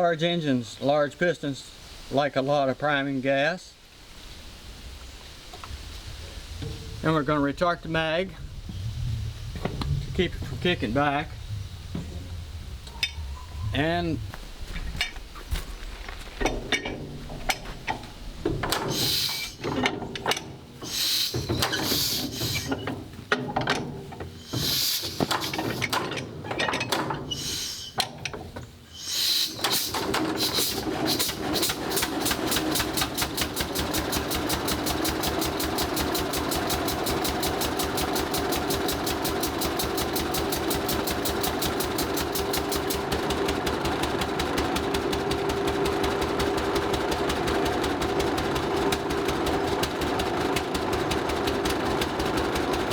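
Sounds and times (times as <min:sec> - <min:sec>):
tractor engine running: 0:13.8 - 0:28.8, 0:29.5 - 0:52.9
clanks and hisses: 0:14.7 - 0:43.2.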